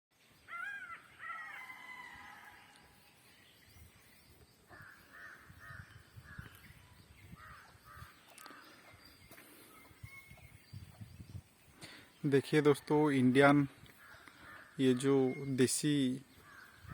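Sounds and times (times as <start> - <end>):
crows cawing: 0.5 - 2.0, 4.7 - 6.6, 7.4 - 8.8, 13.9 - 15.1, 16.4 - 16.9.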